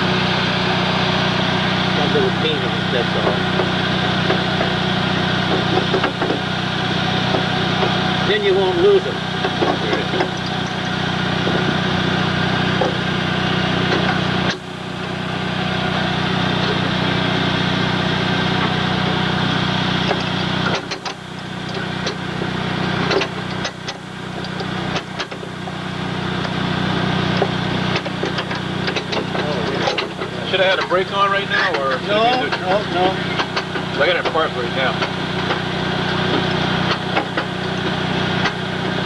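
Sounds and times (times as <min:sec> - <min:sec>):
vehicle engine idling: 0:00.0 - 0:39.0
sharp clicks and knocks: 0:03.0 - 0:06.5, 0:07.2 - 0:08.2, 0:09.4 - 0:13.1, 0:13.7 - 0:14.6, 0:20.0 - 0:25.8, 0:27.3 - 0:39.0.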